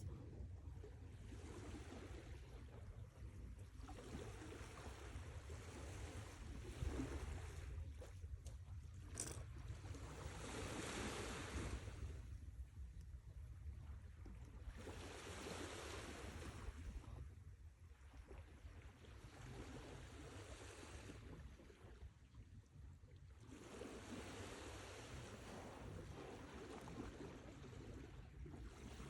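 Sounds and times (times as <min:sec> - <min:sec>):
sea waves breaking: 0:10.0 - 0:12.2, 0:14.6 - 0:17.0, 0:23.5 - 0:29.0.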